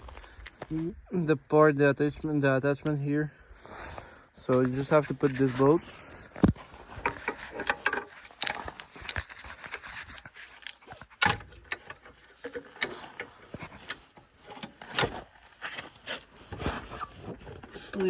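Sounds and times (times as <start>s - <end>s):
bolt clinking against metal frame: 7.1s - 15.1s.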